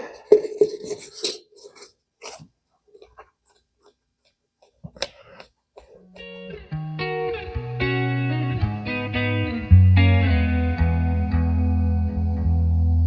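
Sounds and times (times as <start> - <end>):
guitar note: 6.1 - 13.0.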